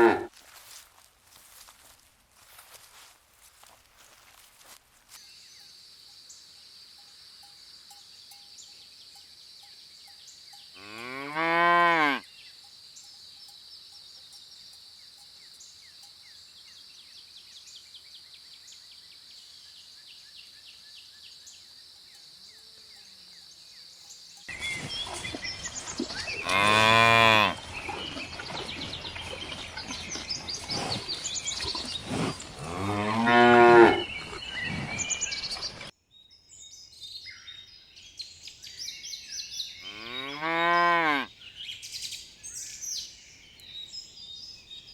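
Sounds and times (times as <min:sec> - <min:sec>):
cows mooing: 0:00.0 - 0:00.3, 0:10.8 - 0:12.2, 0:26.3 - 0:27.7, 0:31.6 - 0:34.4, 0:39.8 - 0:41.3.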